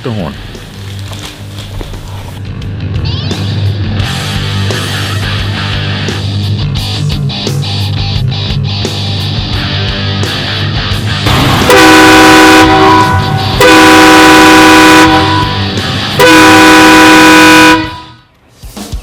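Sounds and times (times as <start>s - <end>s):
train horn blasts: 11.6s - 18.2s.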